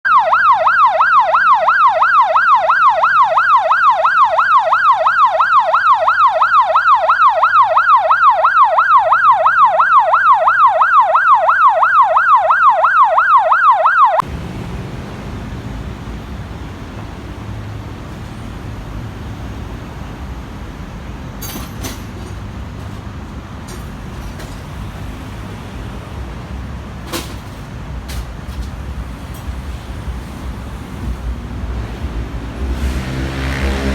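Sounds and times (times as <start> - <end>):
electronic siren yelp: 0.0 - 14.2
wind-like background noise: 14.2 - 33.9.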